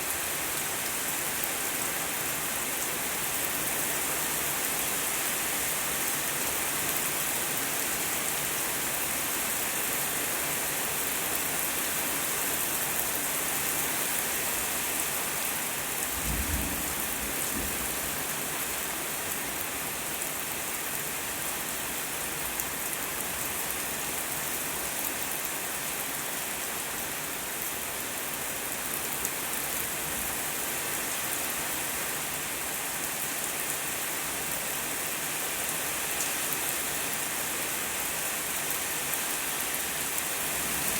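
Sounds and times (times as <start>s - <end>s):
rain falling: 0.1s - 40.9s
low rumble of thunder: 16.1s - 18.4s.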